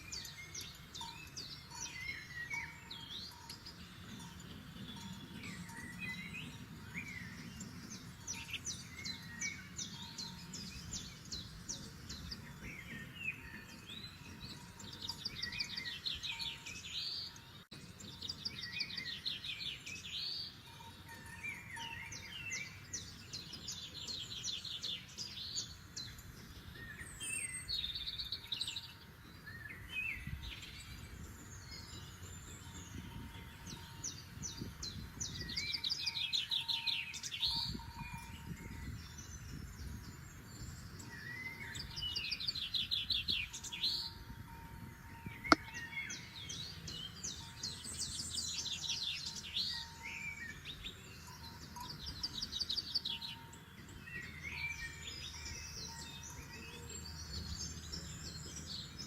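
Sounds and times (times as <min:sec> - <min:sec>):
songbirds singing: 0:00.0 - 0:59.0.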